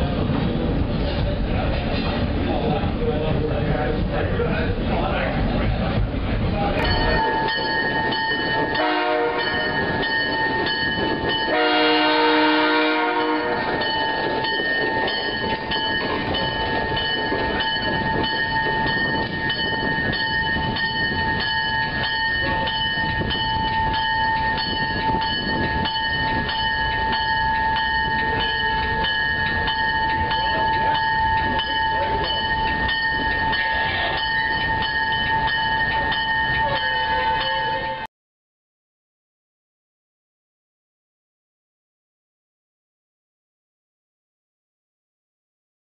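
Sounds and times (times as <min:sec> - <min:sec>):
train rumbling on rails: 0:00.0 - 0:38.1
train horn blast: 0:08.8 - 0:09.7, 0:11.5 - 0:13.8.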